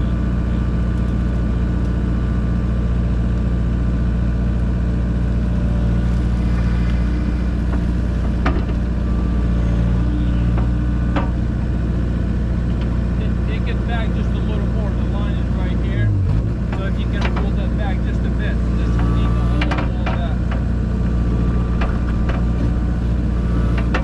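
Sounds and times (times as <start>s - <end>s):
excavator diesel engine running: 0.0s - 24.0s
sharp knocks: 6.1s - 9.0s.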